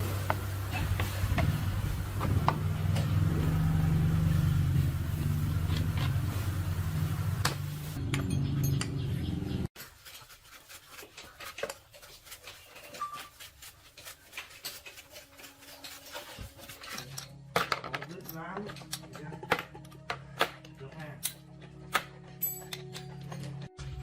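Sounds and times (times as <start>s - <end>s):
motorcycle engine running: 0.0s - 9.7s
metallic clinks of tools: 22.2s - 23.6s.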